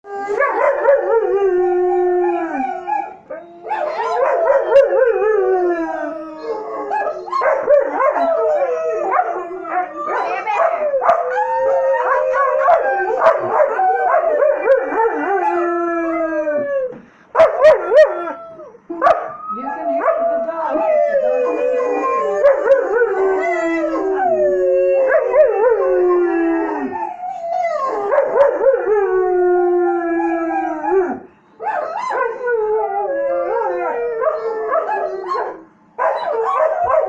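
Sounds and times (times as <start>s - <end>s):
big dogs howling: 0.0s - 37.0s.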